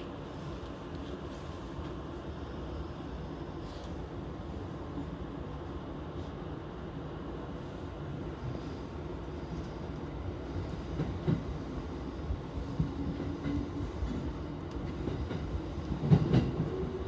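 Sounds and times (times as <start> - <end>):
train wheels rumbling: 8.0 - 17.0.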